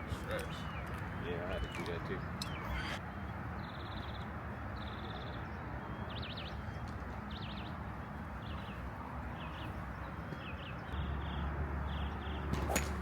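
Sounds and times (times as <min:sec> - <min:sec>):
songbird trills and chirps: 0:00.4 - 0:03.0.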